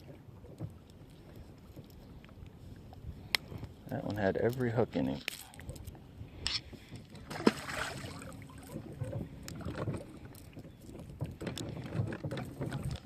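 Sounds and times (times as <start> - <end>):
wind buffeting microphone: 0.0 - 13.0
small clicks and knocks: 9.1 - 13.0.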